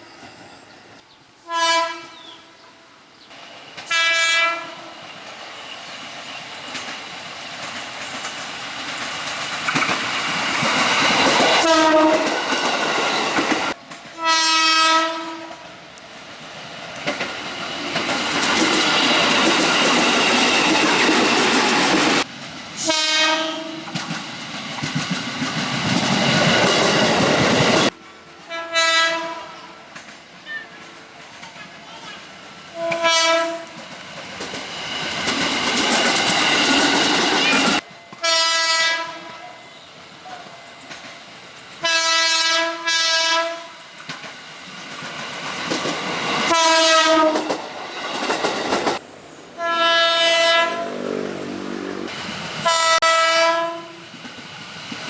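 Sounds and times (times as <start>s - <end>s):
trains rushing and clattering past: 0.0s - 1.0s, 3.3s - 55.0s
train horn blasts: 1.4s - 2.9s, 3.9s - 5.0s, 11.6s - 12.4s, 14.2s - 15.7s, 22.8s - 23.9s, 28.4s - 29.8s, 32.7s - 33.8s, 38.1s - 39.6s, 41.8s - 43.8s, 46.5s - 47.6s, 49.6s - 54.0s.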